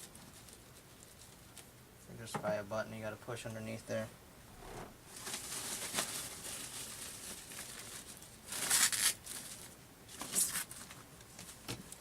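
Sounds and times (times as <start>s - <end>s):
plastic packaging rustling: 5.1s - 11.7s.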